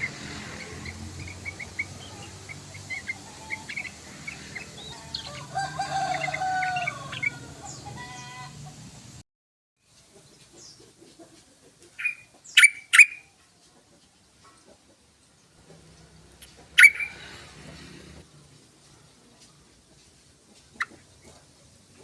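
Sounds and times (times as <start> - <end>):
bird chirping: 0.0 - 8.5, 10.1 - 11.2, 11.8 - 13.4, 15.4 - 17.9.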